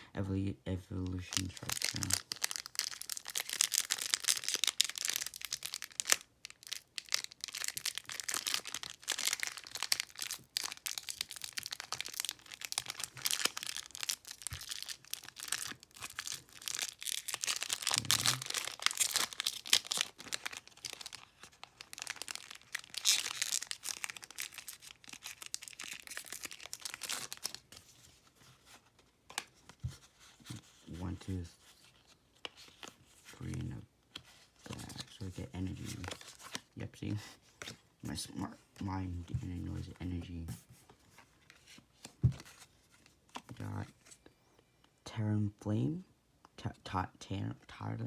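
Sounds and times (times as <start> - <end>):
foil wrapper tearing and crinkling: 1.2 - 27.8.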